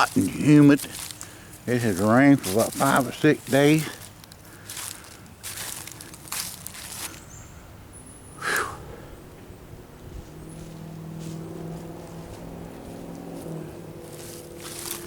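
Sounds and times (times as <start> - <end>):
motor vehicle engine hum: 0.0 - 15.0
loud rustle: 12.0 - 15.0.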